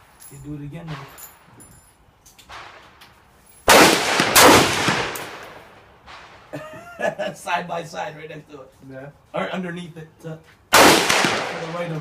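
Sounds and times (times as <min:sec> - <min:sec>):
rifle shot: 0:02.5 - 0:02.9, 0:03.7 - 0:06.5, 0:10.7 - 0:12.0
loud gunshot report: 0:03.7 - 0:05.4, 0:10.7 - 0:12.0.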